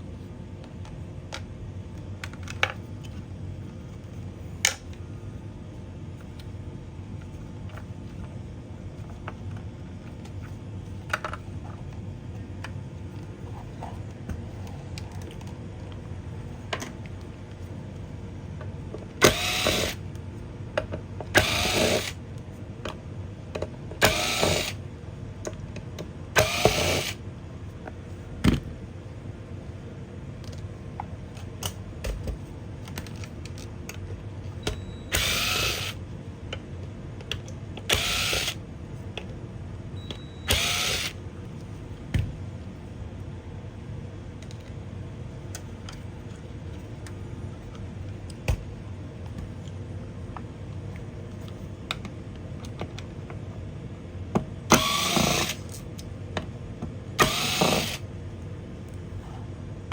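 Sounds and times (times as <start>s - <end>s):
steady low hum: 0.0s - 59.9s
electric screwdriver spinning: 19.2s - 20.0s, 21.4s - 22.2s, 24.0s - 24.8s, 26.4s - 27.2s, 35.1s - 36.0s, 37.9s - 38.6s, 40.5s - 41.2s, 54.7s - 55.6s, 57.2s - 58.0s.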